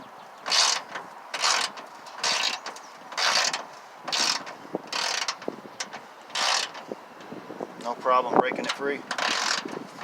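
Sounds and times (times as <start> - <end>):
ratchet clicking: 9.1 - 9.8.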